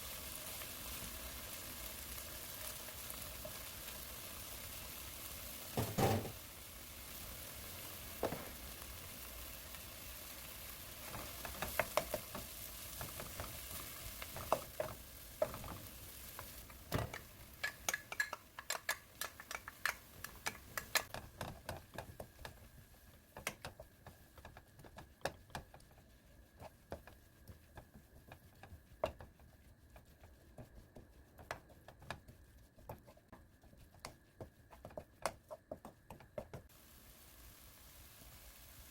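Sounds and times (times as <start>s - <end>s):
rice sizzling in frying pan: 0.0s - 28.4s, 36.7s - 38.9s
spatula scraping pan: 5.8s - 6.4s
utensil tapping on pan: 5.8s - 6.4s, 16.9s - 22.6s.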